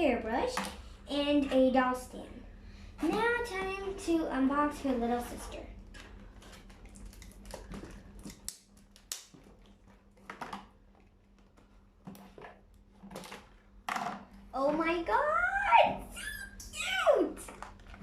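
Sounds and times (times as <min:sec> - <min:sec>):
packaging crinkling and rustling: 0:05.9 - 0:13.6.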